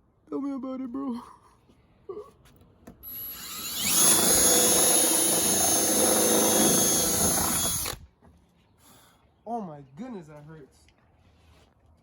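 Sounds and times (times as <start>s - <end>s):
power drill whining: 3.0s - 8.0s.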